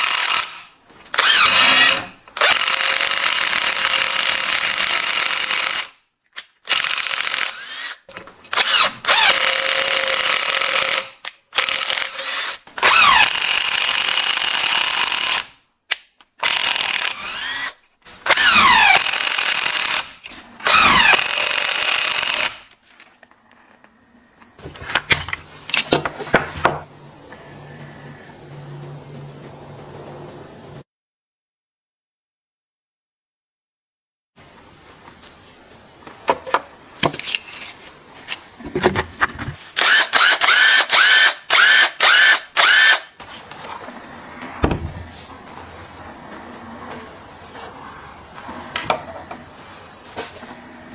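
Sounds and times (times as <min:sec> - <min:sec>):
electric screwdriver motor whining: 0:01.2 - 0:05.9, 0:06.7 - 0:11.0, 0:11.6 - 0:15.5, 0:16.4 - 0:22.7, 0:39.8 - 0:43.1.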